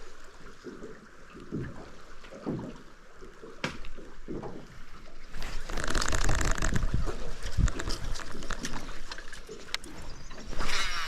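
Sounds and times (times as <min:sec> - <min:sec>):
rush of wind or water: 0:05.3 - 0:11.0.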